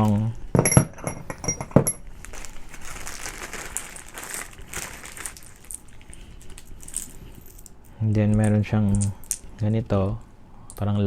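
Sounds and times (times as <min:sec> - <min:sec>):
metal screws clinking: 0:00.6 - 0:02.0
plastic packet crinkling: 0:02.1 - 0:07.8.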